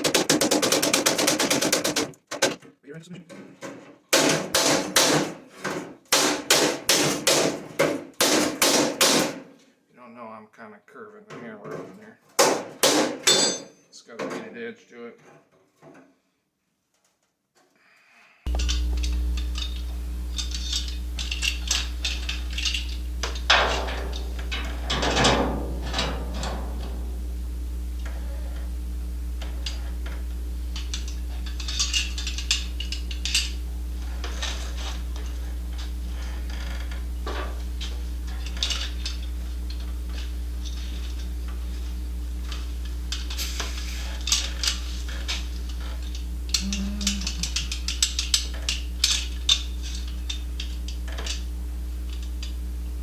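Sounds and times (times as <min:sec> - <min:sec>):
metal tools tapping steel: 0:13.2 - 0:13.8, 0:46.5 - 0:49.6
steady electrical hum: 0:18.5 - 0:53.0.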